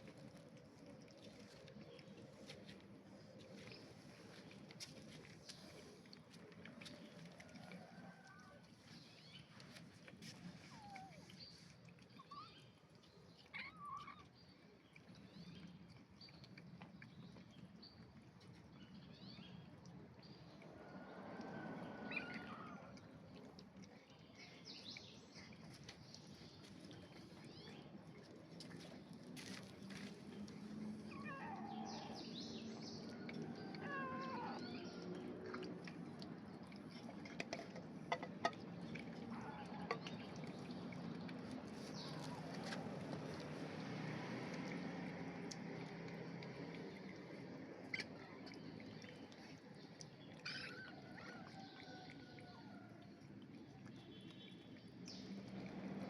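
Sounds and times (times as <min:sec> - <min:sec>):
cats meowing: 0:13.4 - 0:14.4, 0:31.0 - 0:32.2, 0:33.6 - 0:34.9.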